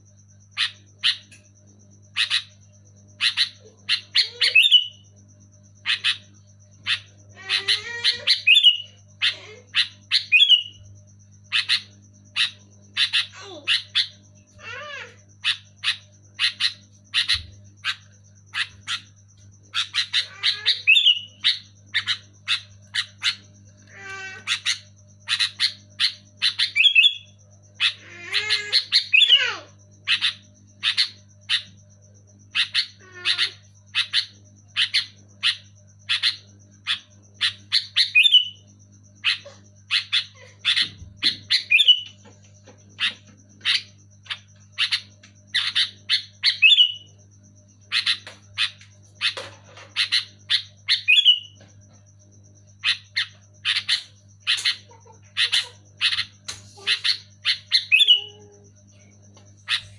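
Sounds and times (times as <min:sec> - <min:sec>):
faint low hum: 0:00.0 - 0:59.9
bulbul calling: 0:32.5 - 0:38.6, 0:47.8 - 0:51.7, 0:52.8 - 0:59.9.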